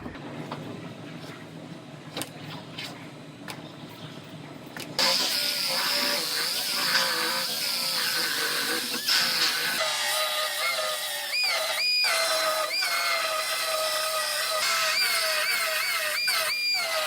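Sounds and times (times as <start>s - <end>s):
power tool cutting metal: 5.0s - 17.0s.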